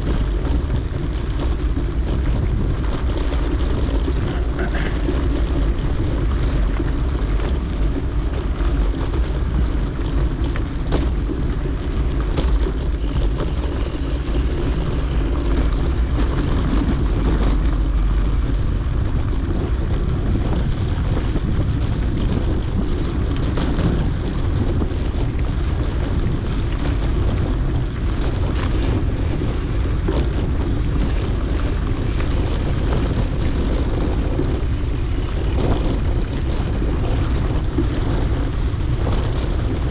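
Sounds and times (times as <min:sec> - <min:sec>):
bike clicks and rattles: 0:00.0 - 0:39.9
bike tyres rolling on dirt: 0:00.0 - 0:39.9
wind on microphone: 0:00.0 - 0:39.9.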